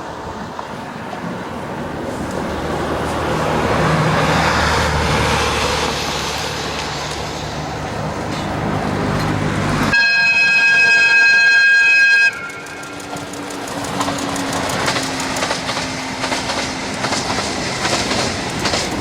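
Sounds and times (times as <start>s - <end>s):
diesel train approaching: 0.0s - 19.0s
train horn blast: 9.9s - 13.0s.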